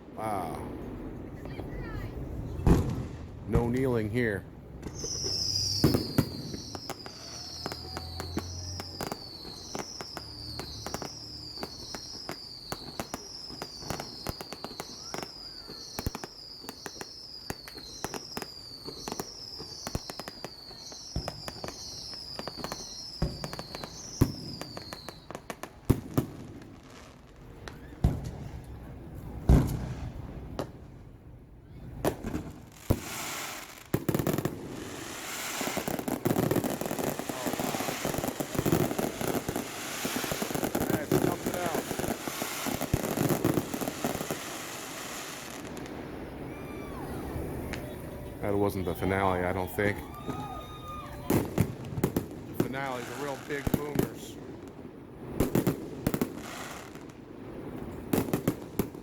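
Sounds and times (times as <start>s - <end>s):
fireworks booms: 0.0s - 59.0s
fireworks crackling and popping: 0.0s - 59.0s
high falling chirp: 5.0s - 25.3s.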